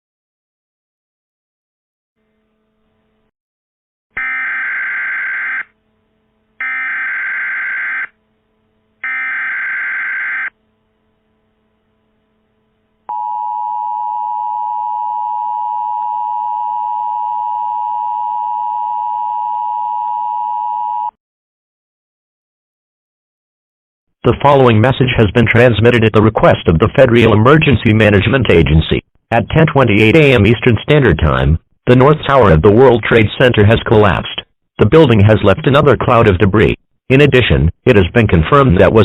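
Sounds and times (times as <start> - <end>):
faint low hum: 5.6 - 21.1
steady two-tone attention signal: 13.1 - 21.1.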